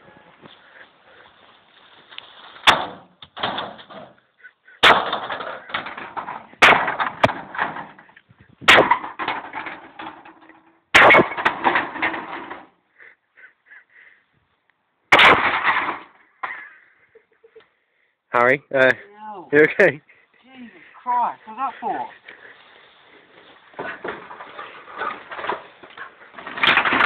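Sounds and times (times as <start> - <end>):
metal clatter: 4.8 - 8.1, 8.7 - 12.7, 15.1 - 16.6, 23.8 - 27.0
sledgehammer striking metal: 11.0 - 12.2.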